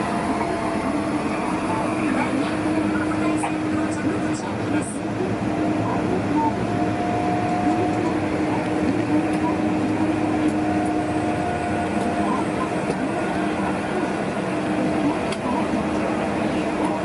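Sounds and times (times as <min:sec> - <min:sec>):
bus engine drone: 0:00.0 - 0:17.0.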